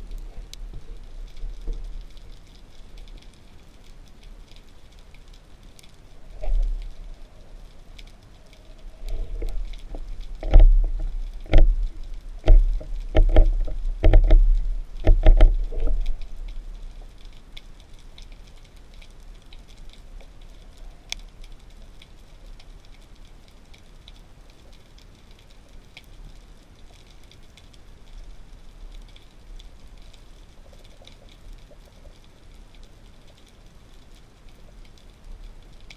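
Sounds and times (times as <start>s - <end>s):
faint steady hiss: 0.0s - 35.9s
dull thumps and knocks: 9.5s - 16.1s.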